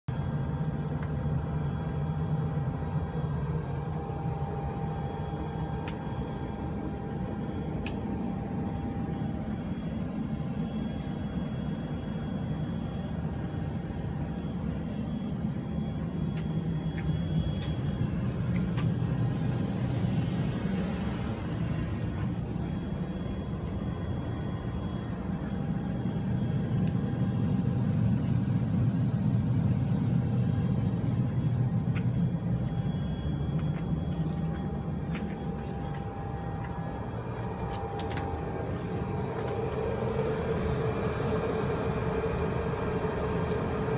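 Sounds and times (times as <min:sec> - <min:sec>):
air conditioning rumble and whir: 0:00.0 - 0:43.9
faint steady tones: 0:00.1 - 0:43.9.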